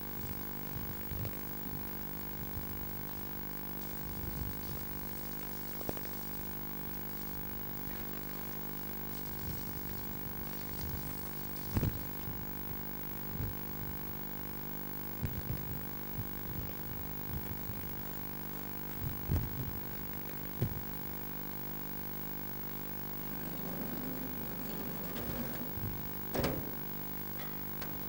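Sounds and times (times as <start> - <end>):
steady electrical hum: 0.0 - 28.0
dull low thumps: 23.2 - 28.0.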